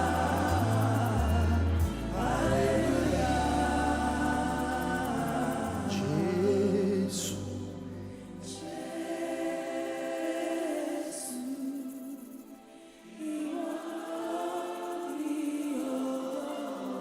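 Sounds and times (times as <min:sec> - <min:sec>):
low bass: 0:00.0 - 0:08.5
gospel music with singing voices: 0:00.0 - 0:17.0.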